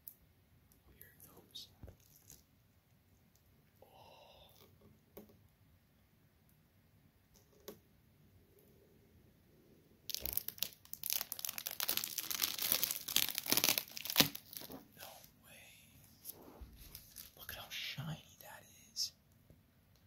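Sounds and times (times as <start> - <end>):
plastic packaging crinkling: 10.1 - 14.9, 16.8 - 17.4.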